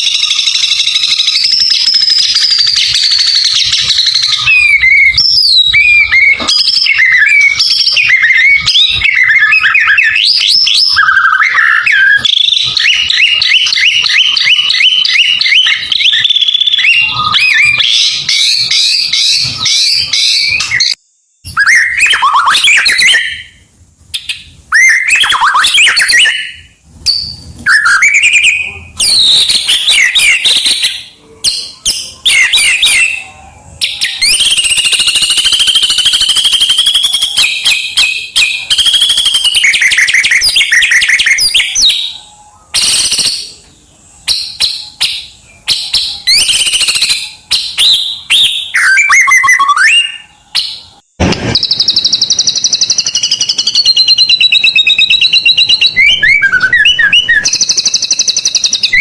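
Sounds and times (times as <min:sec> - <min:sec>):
bird singing whistles and chatter: 0:00.0 - 0:59.0.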